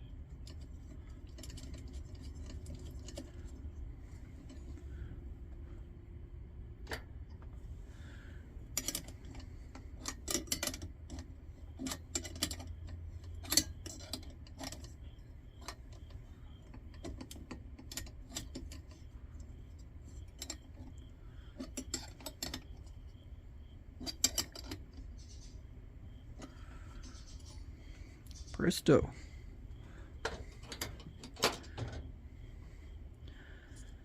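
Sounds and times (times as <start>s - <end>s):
low steady hum: 0.0s - 34.0s
small metal parts clinking: 0.4s - 3.6s, 8.7s - 23.0s, 24.0s - 25.6s, 30.2s - 32.1s.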